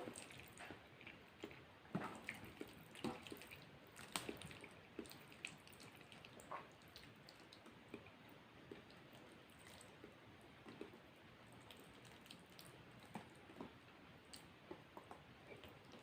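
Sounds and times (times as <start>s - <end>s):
wet chewing and mouth clicks: 0.0s - 16.0s.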